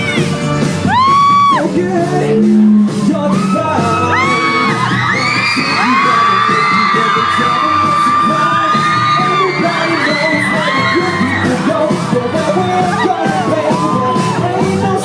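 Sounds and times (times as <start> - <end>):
crowd screaming and whooping: 0.0 - 15.0
music playing: 0.0 - 15.0.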